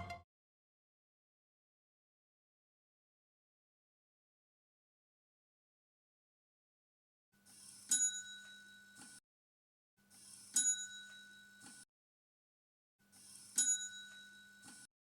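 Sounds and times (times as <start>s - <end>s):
small bell ringing: 7.9s - 9.0s, 10.6s - 11.6s, 13.6s - 14.7s.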